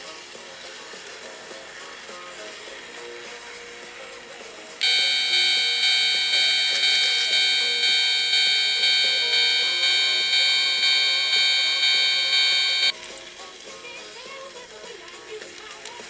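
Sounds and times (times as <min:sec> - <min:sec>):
level-crossing warning bell clanging: 0:04.8 - 0:12.9.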